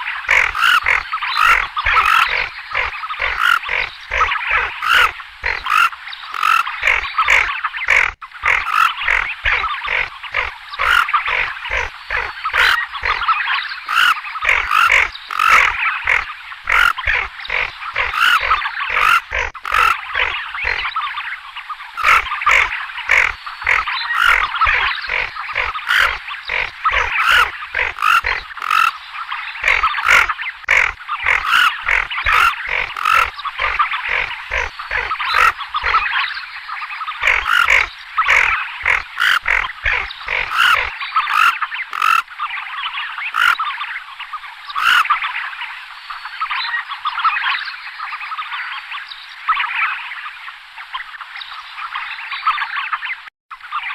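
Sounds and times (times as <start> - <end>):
ducks growling calls: 0.0 - 21.0, 22.0 - 36.1, 37.2 - 42.2, 43.3 - 43.6, 44.8 - 45.1.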